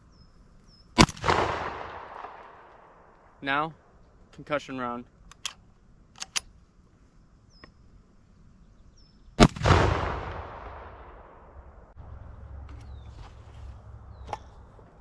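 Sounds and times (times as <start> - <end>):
loud shotgun blast: 1.0 - 2.7, 9.4 - 11.6
rumbling echo: 9.5 - 13.0.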